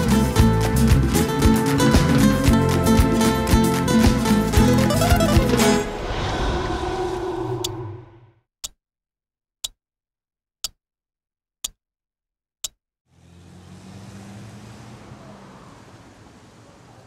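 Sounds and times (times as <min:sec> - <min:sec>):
clock ticking: 0:10.6 - 0:10.8.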